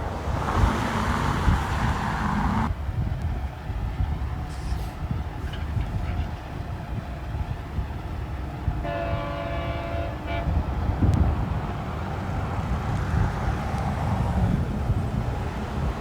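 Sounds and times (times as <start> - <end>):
train running rumble: 0.0 - 16.0
train horn blast: 8.7 - 11.4.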